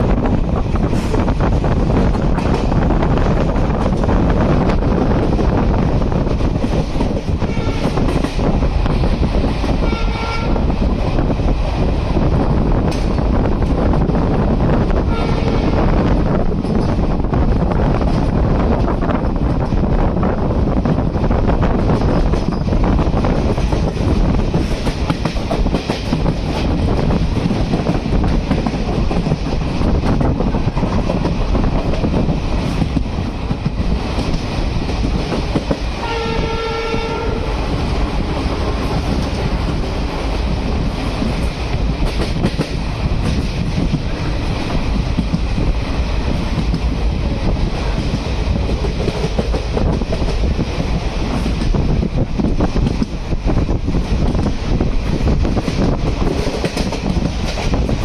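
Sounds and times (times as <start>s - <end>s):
train rumble and wheel clatter: 0.0s - 58.0s
train horn: 7.4s - 8.1s, 9.8s - 10.7s, 15.0s - 16.0s, 36.0s - 37.7s.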